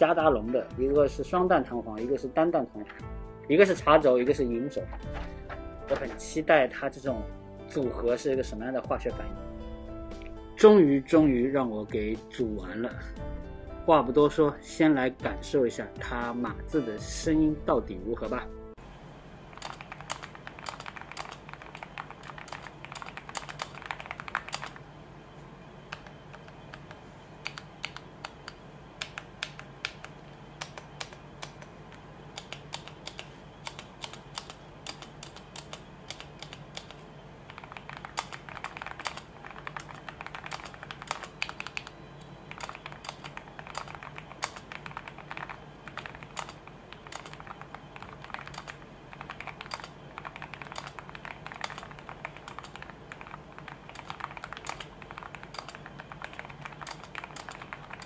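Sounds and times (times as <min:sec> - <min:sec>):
mechanical keyboard key clacks: 0:32.4 - 0:41.9, 0:42.5 - 0:58.0.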